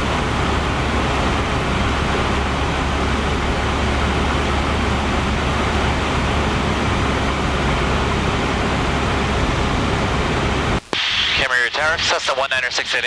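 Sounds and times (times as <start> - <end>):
small plane engine droning in cabin: 0.0 - 10.9.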